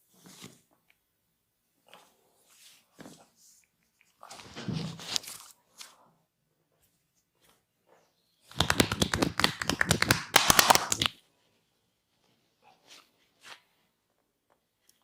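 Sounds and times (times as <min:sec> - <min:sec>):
hands slapping on skin: 0:08.5 - 0:11.1.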